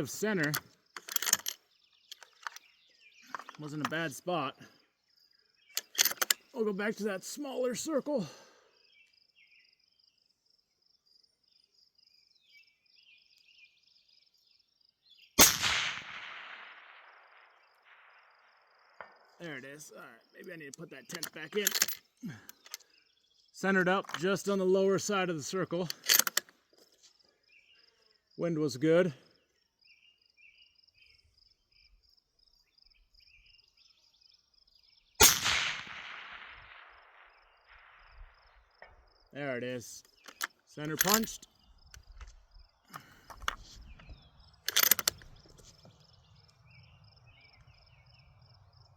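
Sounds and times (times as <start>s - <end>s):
insects trilling: 0.0s - 15.2s, 17.0s - 35.2s, 36.8s - 48.9s
rifle shot with long echo: 15.4s - 19.3s, 35.2s - 38.6s
faint chirps: 36.9s - 48.9s.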